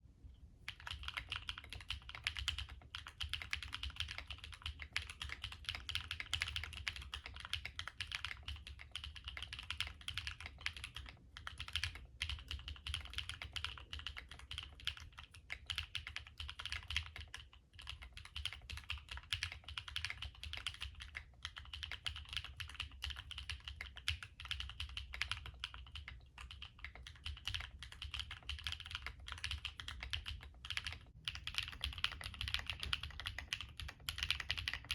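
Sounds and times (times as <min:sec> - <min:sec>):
fast mechanical keyboard typing: 0:00.7 - 0:34.9.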